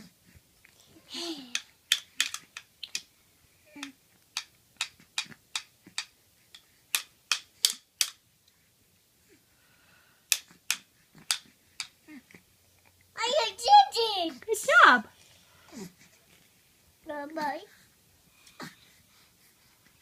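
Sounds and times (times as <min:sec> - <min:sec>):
toy hammer tapping: 0:01.5 - 0:03.0, 0:03.8 - 0:08.2, 0:10.3 - 0:12.0.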